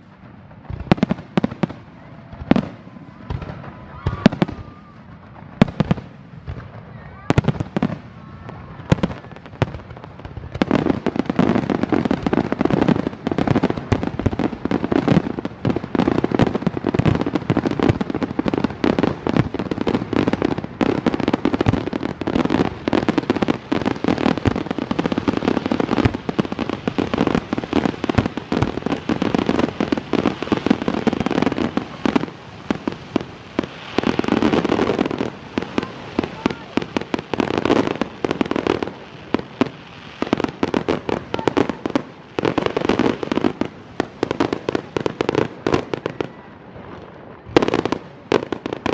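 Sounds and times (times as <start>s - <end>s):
fireworks bangs and crackles: 0.0s - 48.9s.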